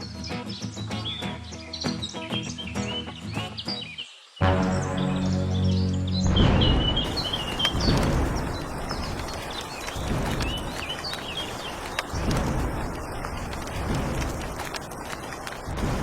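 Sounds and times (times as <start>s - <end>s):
small birds chirping: 0.0s - 16.0s
faint clicks: 7.1s - 16.0s.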